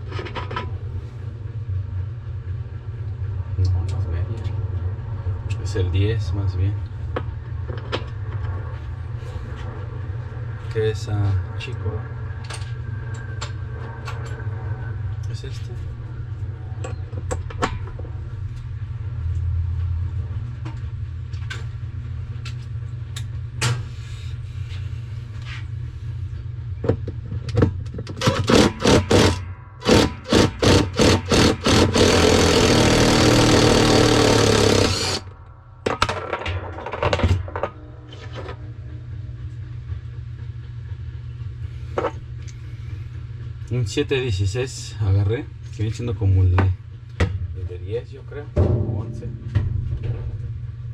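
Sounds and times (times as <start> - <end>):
steady low hum: 0.0 - 50.9
power driver running: 28.1 - 35.6.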